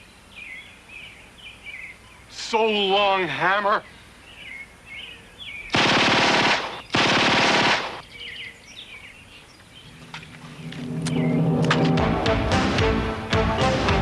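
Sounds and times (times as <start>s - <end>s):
automatic gunfire bursts: 5.7s - 8.0s.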